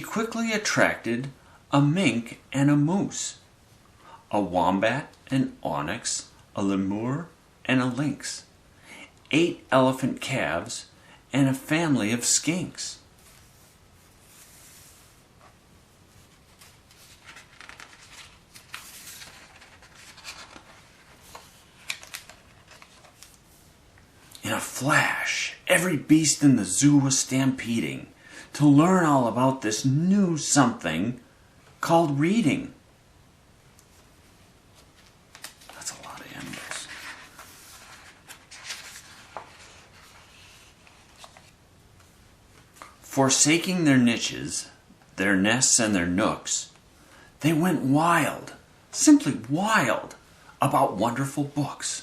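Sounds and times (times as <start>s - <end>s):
book pages rustling: 13.2s - 23.8s, 33.8s - 43.0s.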